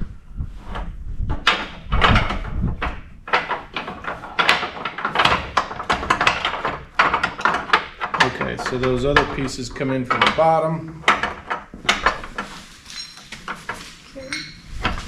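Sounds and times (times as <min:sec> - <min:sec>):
parts knocking and rattling: 0:00.0 - 0:15.0.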